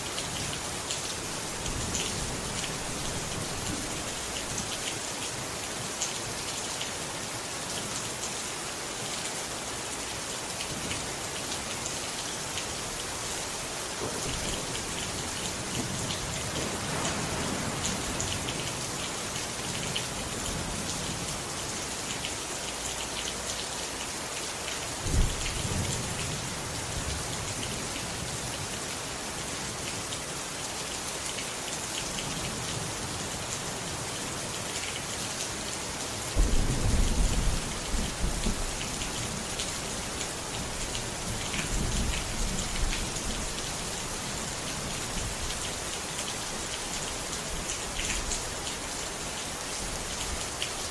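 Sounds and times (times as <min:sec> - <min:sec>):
steady rain: 0:00.0 - 0:50.9
thunder rumbling: 0:36.4 - 0:38.8.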